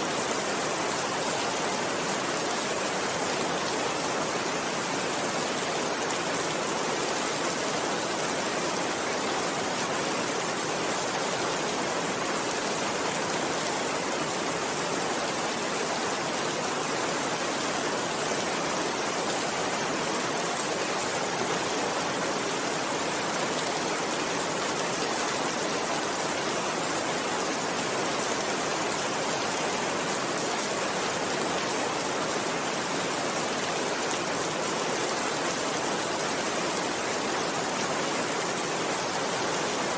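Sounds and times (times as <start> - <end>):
steady rain hiss: 0.0 - 39.9.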